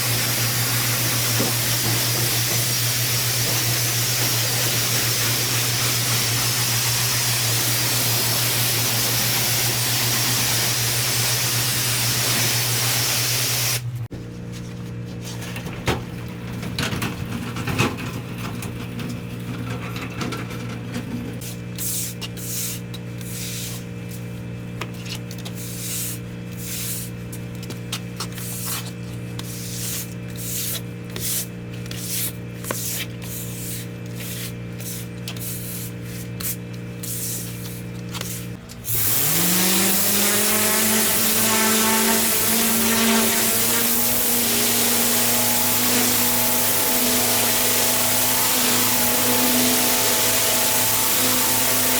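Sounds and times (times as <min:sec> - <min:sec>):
pressure washer jet hissing: 0:00.0 - 0:13.9, 0:38.8 - 0:51.9
pressure washer motor hum: 0:00.0 - 0:14.1, 0:32.2 - 0:51.9.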